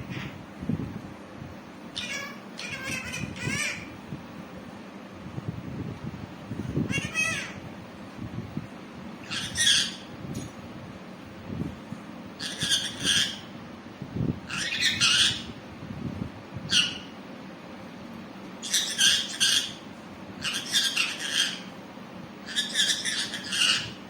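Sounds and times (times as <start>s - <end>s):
parrot squawking: 2.0s - 3.9s, 6.9s - 7.6s, 9.2s - 10.1s, 12.4s - 13.5s, 14.5s - 15.6s, 16.7s - 17.1s, 18.6s - 21.7s, 22.4s - 24.0s.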